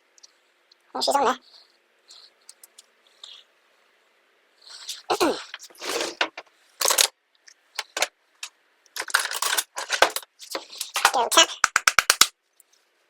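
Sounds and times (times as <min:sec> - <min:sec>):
metal parts and tools clinking: 0:05.6 - 0:07.1, 0:07.8 - 0:08.1, 0:09.0 - 0:11.2.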